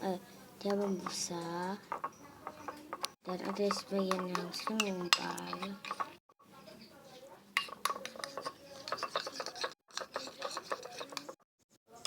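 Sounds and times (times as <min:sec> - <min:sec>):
spoon scraping slime in container: 0:00.7 - 0:06.2, 0:07.6 - 0:11.4.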